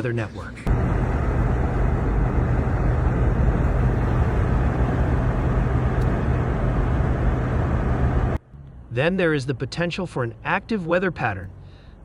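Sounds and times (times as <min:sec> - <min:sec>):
engine running: 0:00.6 - 0:08.9.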